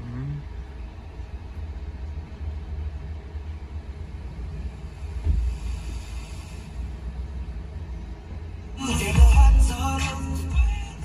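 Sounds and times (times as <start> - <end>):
low rumble inside a car: 0.0 - 11.0
thump: 5.2 - 5.5.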